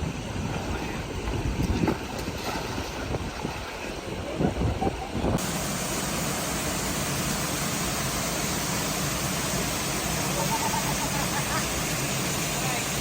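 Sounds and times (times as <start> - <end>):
rushing water: 0.0 - 13.0.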